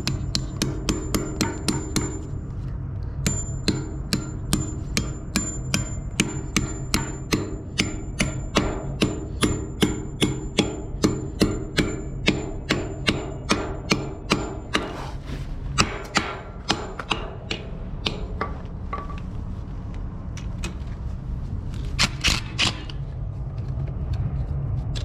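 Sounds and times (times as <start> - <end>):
hammer striking steel: 0.0 - 2.4, 3.2 - 15.2, 15.8 - 19.2.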